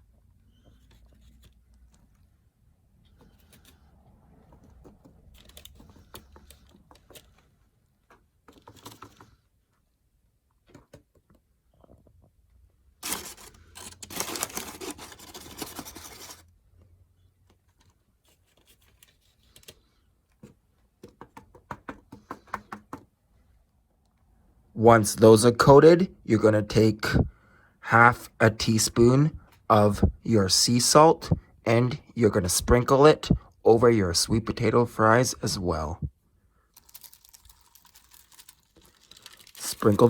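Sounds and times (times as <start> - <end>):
rustling of paper: 0.5 - 2.3, 3.0 - 9.5, 13.0 - 16.5, 17.5 - 20.6, 36.6 - 40.0.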